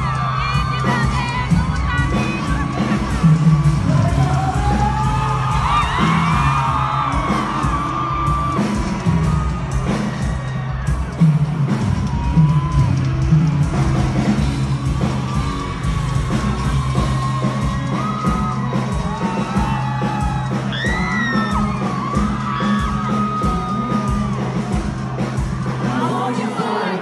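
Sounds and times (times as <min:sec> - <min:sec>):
person singing: 0:00.0 - 0:06.7, 0:25.7 - 0:27.0
crowd yelling and whooping: 0:00.0 - 0:27.0
loud live music: 0:00.0 - 0:27.0.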